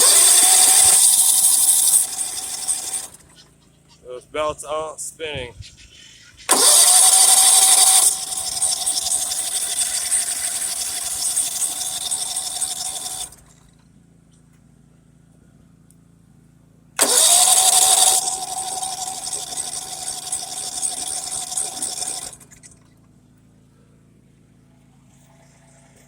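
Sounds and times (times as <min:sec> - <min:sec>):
electric starter whining: 0:00.0 - 0:03.6, 0:06.4 - 0:13.9, 0:17.0 - 0:23.0.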